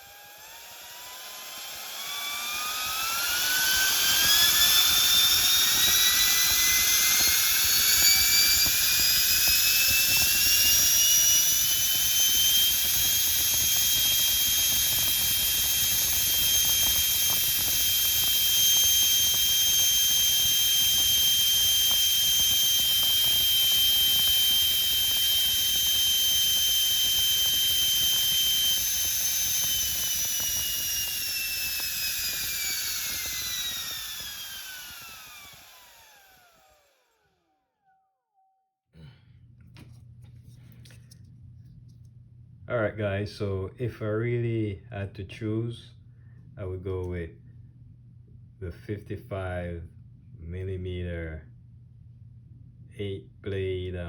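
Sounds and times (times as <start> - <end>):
electric ducted fan whine: 0.0 - 37.0.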